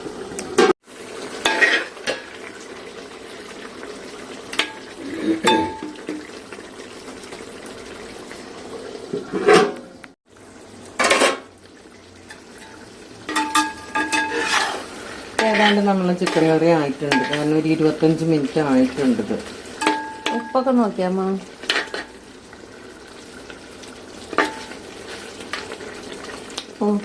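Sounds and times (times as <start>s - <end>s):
faint hiss of simmering: 0.0s - 9.4s, 10.0s - 27.0s
spoon scraping a pot: 1.4s - 1.9s, 13.3s - 17.6s, 21.6s - 22.1s.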